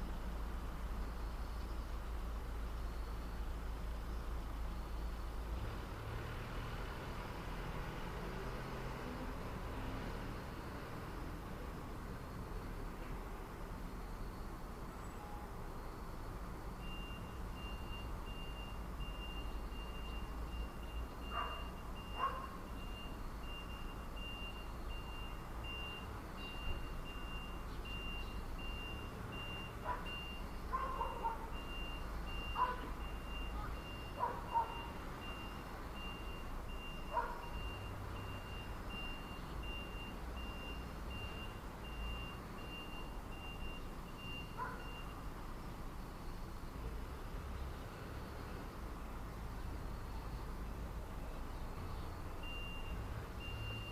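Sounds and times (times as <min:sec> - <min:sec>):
low traffic rumble: 0:00.0 - 0:53.9
reversing alarm beeps: 0:16.8 - 0:45.3, 0:52.3 - 0:53.9
dog barking: 0:21.3 - 0:22.6, 0:29.8 - 0:30.1, 0:30.7 - 0:31.5, 0:32.6 - 0:32.9, 0:33.6 - 0:34.9, 0:37.1 - 0:37.4, 0:44.6 - 0:44.9.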